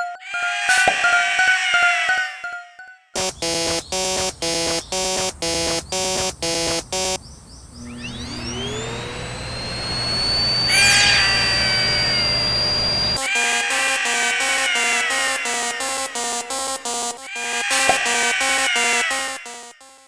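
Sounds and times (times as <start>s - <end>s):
falling tones: 0.1s - 19.7s
rising whine into steady tone: 3.2s - 18.6s.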